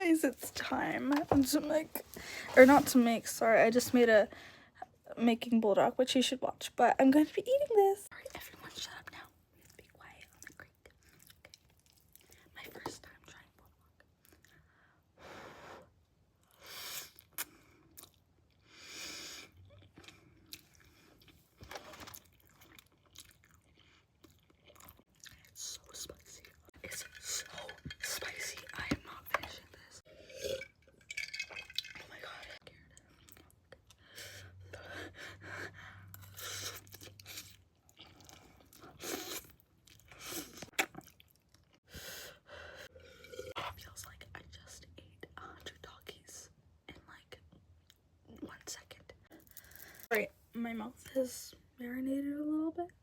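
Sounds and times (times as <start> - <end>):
close-up chewing noodles: 19.5 - 26.7, 36.3 - 41.8
wet mouth sounds: 36.5 - 41.3.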